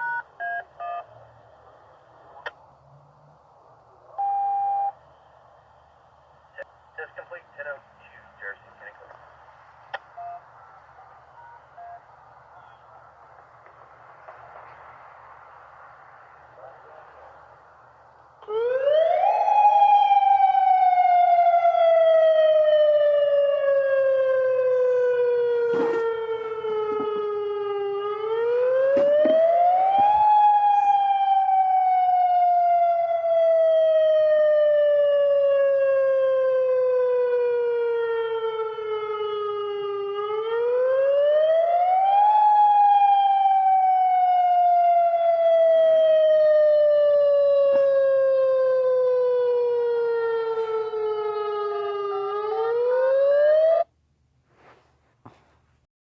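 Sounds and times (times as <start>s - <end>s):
warning siren wailing: 18.4s - 53.9s.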